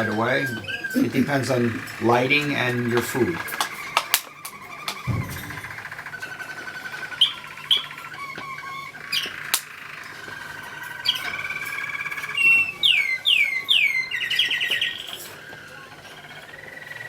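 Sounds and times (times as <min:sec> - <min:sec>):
loud falling whistled notes: 0:00.0 - 0:07.9
canaries trilling: 0:00.0 - 0:17.0.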